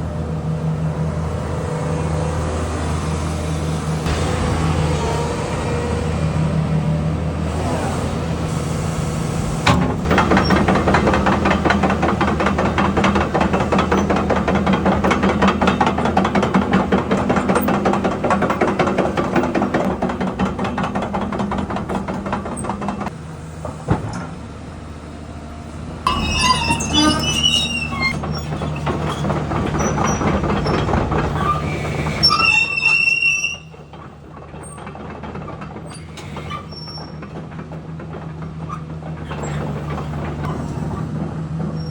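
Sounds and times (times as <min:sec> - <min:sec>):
diesel engine running: 0:00.0 - 0:32.4
steel tracks clattering: 0:01.0 - 0:41.9
metal-on-metal squeals: 0:26.1 - 0:34.8.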